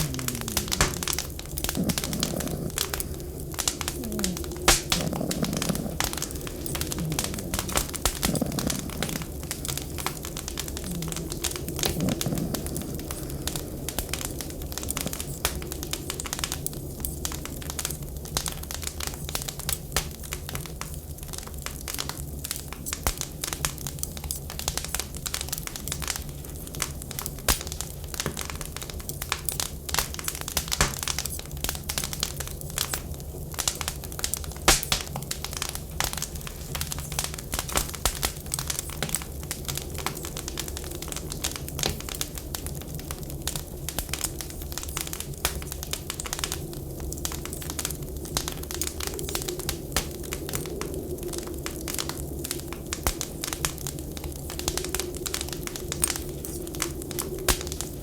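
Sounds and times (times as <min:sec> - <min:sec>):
low rumble: 0:00.0 - 0:14.0
wood fire crackling: 0:00.0 - 0:58.0.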